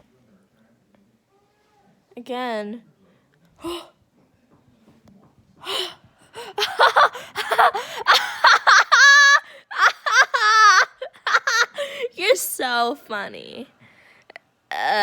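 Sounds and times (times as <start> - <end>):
person laughing hard: 6.5 - 11.9.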